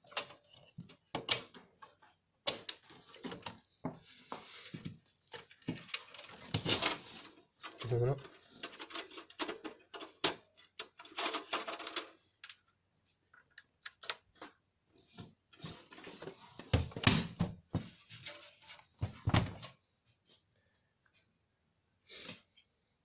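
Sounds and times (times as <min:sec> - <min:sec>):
computer parts clicking and knocking: 0:00.0 - 0:03.6, 0:05.3 - 0:12.7.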